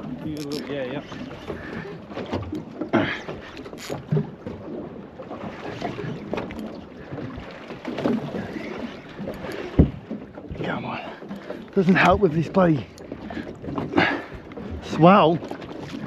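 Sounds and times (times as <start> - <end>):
water slapping against hull: 0.0 - 16.0.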